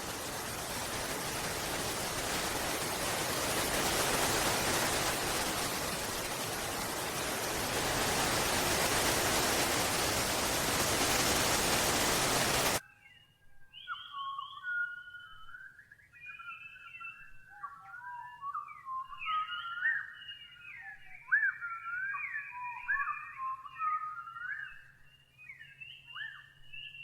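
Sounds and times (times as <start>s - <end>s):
rushing water hiss: 0.0s - 12.8s
whistled bird chirps: 0.0s - 27.0s.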